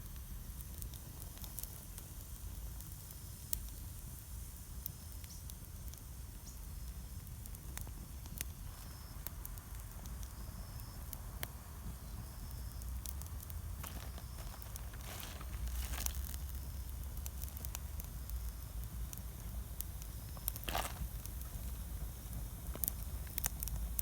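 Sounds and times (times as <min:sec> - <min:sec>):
wood fire crackling and popping: 0:00.0 - 0:24.0.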